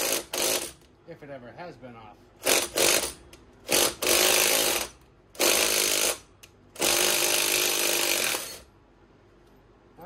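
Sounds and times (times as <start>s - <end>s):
impact wrench hammering: 0.0s - 0.9s, 2.4s - 8.6s.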